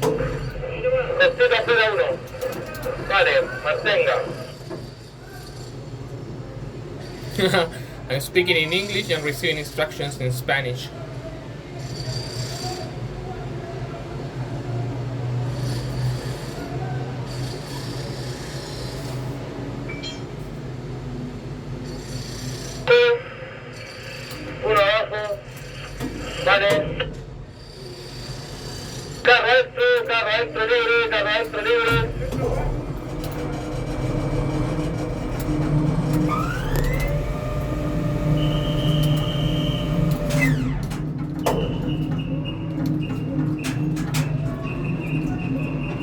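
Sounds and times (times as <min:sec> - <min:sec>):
low hum of machinery: 0:00.0 - 0:46.0
low machinery hum: 0:23.5 - 0:46.0
crane motor whine: 0:31.1 - 0:46.0
short loud steady tone: 0:36.3 - 0:40.8.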